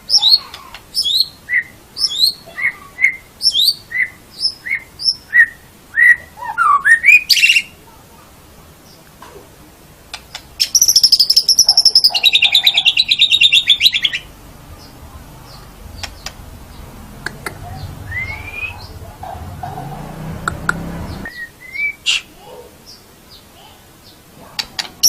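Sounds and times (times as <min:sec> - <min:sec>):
songbird trilling: 0:00.1 - 0:07.8, 0:10.2 - 0:23.5
rising whistle: 0:18.1 - 0:18.8.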